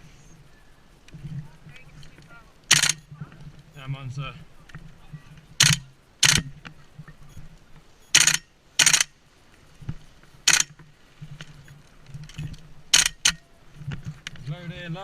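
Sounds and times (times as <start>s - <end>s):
airsoft rifle bursts: 2.7s - 3.1s, 5.6s - 6.5s, 8.1s - 9.2s, 10.4s - 10.8s, 12.9s - 13.4s.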